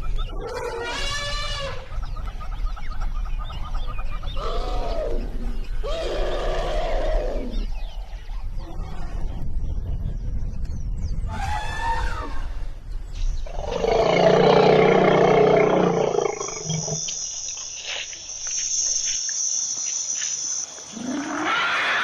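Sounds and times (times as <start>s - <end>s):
elephant roar: 13.5s - 17.0s, 21.0s - 22.0s
elephant calling: 13.6s - 17.2s.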